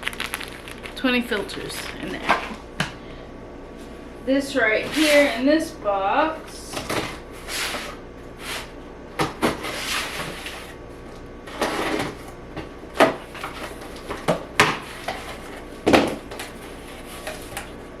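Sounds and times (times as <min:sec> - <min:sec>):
packaging rustling and scraping: 0:00.0 - 0:02.3.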